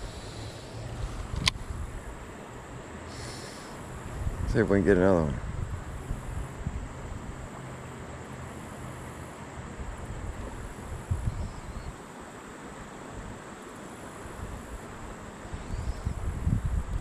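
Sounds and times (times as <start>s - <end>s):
wind buffeting microphone: 0.0s - 2.3s, 3.9s - 7.5s, 9.8s - 12.0s, 14.4s - 17.0s.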